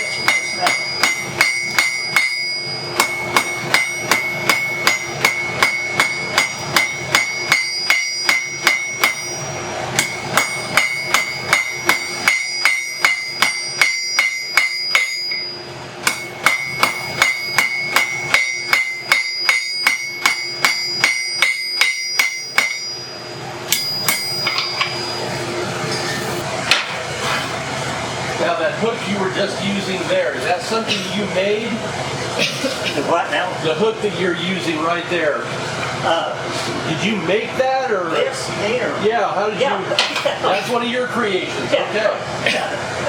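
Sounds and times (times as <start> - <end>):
hammer striking steel on anvil: 0.0 - 26.1.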